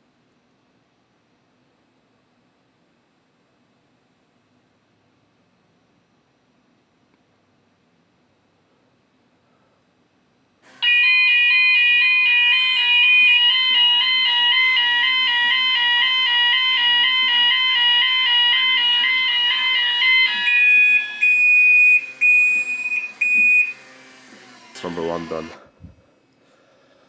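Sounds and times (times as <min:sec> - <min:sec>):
fire alarm tones: 0:10.7 - 0:25.5
high pulsing beep: 0:11.5 - 0:23.8.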